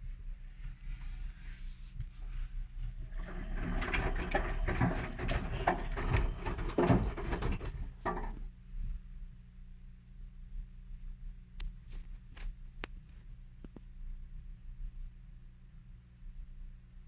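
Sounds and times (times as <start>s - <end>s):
washing machine humming: 2.8s - 8.4s
washing machine sloshing and knocking: 2.8s - 8.4s.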